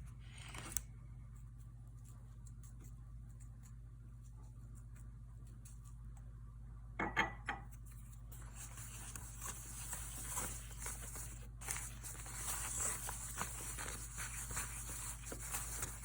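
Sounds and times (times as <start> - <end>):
steady rustling: 8.2 - 16.0.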